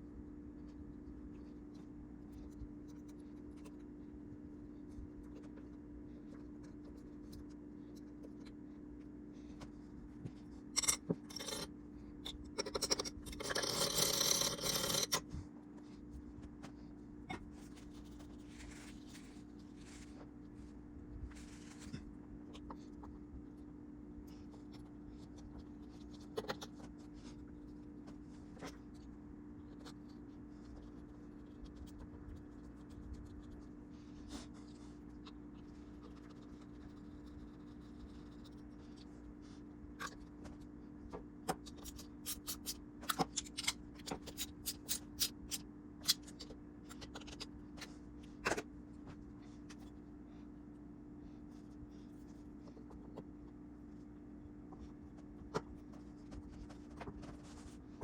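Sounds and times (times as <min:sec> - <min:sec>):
low electrical hum: 0:00.0 - 0:58.0
hand scraping and rubbing: 0:17.4 - 0:22.2.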